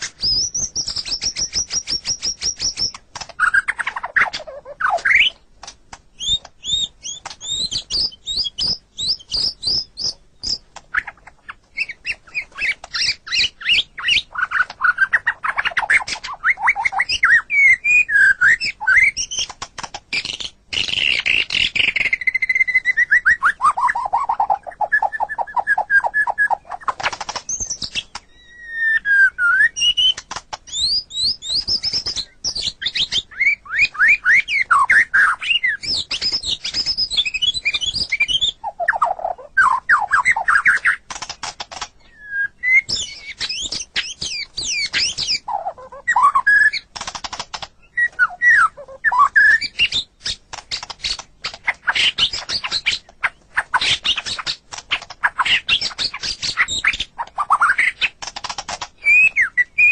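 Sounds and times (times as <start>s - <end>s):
bird singing varied song: 0.0s - 59.9s.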